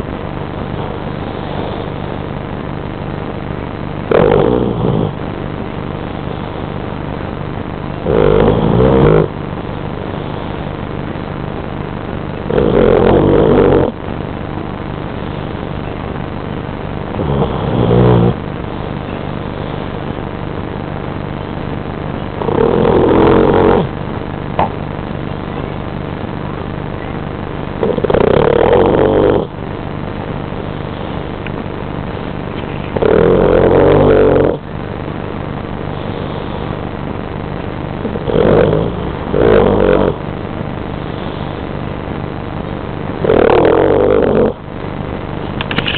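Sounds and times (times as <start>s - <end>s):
low background hum: 0.0s - 45.9s
dog snoring: 4.1s - 5.2s, 8.0s - 9.4s, 12.4s - 14.0s, 17.1s - 18.4s, 22.4s - 23.9s, 27.8s - 29.5s, 32.9s - 34.6s, 38.0s - 40.2s, 43.2s - 44.6s.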